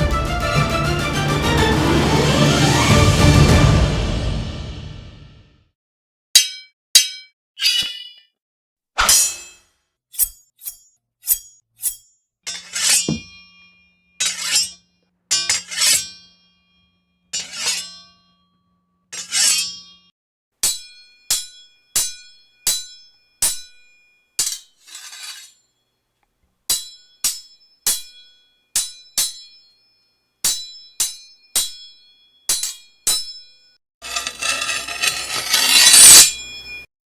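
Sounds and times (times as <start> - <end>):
sword blades clashing: 6.4 - 8.2, 9.0 - 9.6, 10.2 - 12.1, 34.0 - 36.8
sword swish: 7.6 - 8.3, 9.0 - 9.6, 10.2 - 12.1, 34.1 - 36.8
grating metal sound: 10.2 - 12.0, 34.0 - 36.9.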